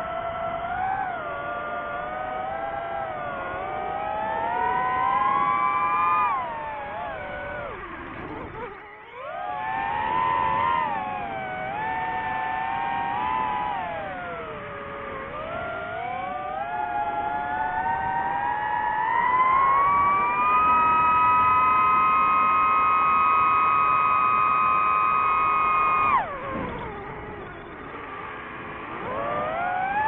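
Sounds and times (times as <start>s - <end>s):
drone propellers whining: 0.0s - 30.0s.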